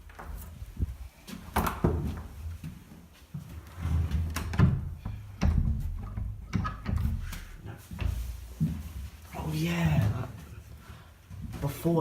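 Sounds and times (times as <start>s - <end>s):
sharp wooden knocks: 4.5s - 7.5s.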